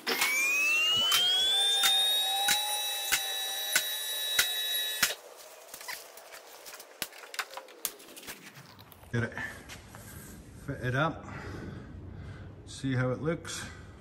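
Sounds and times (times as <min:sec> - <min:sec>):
electric pump motor whining: 0:00.0 - 0:05.2.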